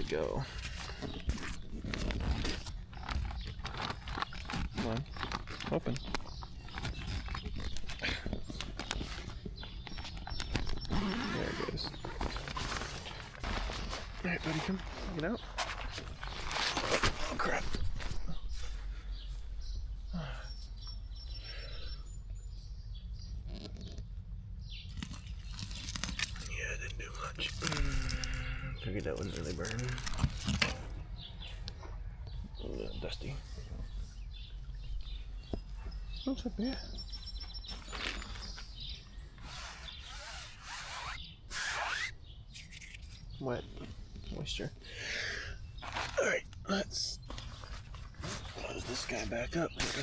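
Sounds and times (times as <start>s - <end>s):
rustling and scraping: 0.0s - 20.1s, 24.8s - 44.4s, 45.8s - 46.2s, 47.2s - 50.0s
soft movement sounds: 0.0s - 21.4s
bird chirping: 0.0s - 50.0s.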